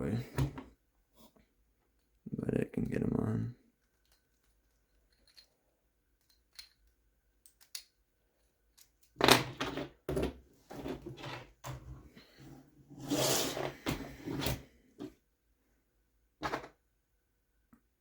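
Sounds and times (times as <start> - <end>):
tools clattering and rustling: 3.9 - 5.6, 8.7 - 12.4
plastic parts clicking: 6.2 - 8.0.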